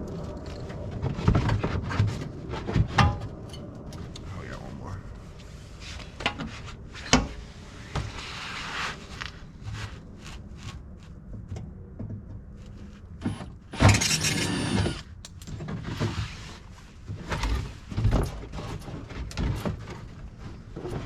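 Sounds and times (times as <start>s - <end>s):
cordless impact driver running: 13.2s - 15.4s
clicks and knocks of handling: 15.2s - 15.8s.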